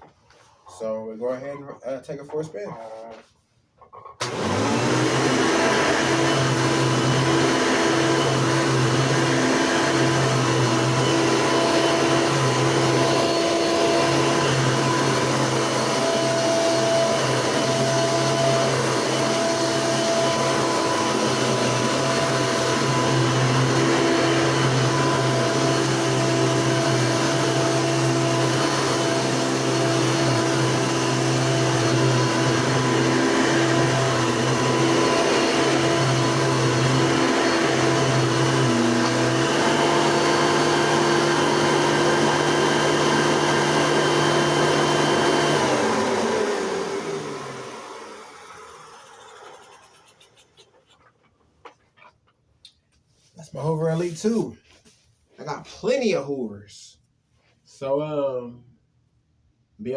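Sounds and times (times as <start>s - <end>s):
vacuum cleaner running: 4.2s - 50.8s.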